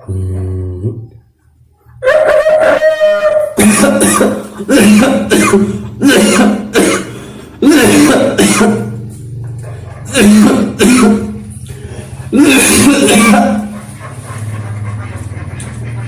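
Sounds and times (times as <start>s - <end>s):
man coughing harshly: 3.6s - 9.0s, 10.1s - 11.4s, 12.3s - 13.7s.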